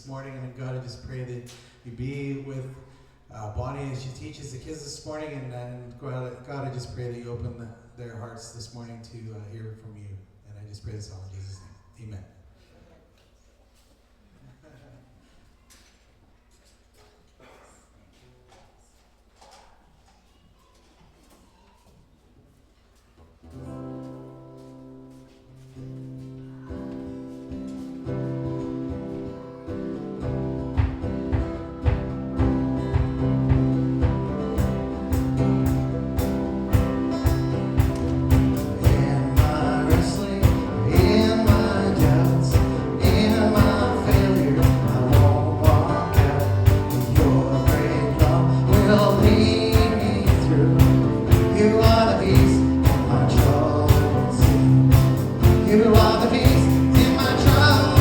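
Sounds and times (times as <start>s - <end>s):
worship song with guitar: 23.5s - 58.0s
steady drum beat: 30.3s - 58.0s
person singing: 36.7s - 58.0s.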